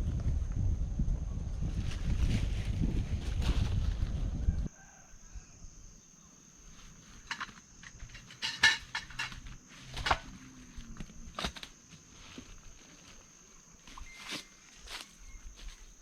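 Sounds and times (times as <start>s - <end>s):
wind rumbling on microphone: 0.0s - 5.8s
faint steady high tone: 13.9s - 15.9s.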